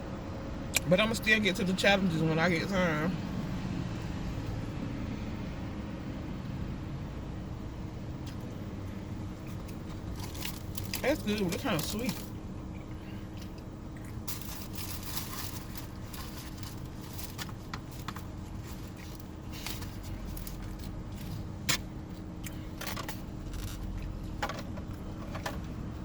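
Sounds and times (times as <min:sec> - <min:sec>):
steady low hum: 0:00.0 - 0:26.0
chewing: 0:12.8 - 0:14.7.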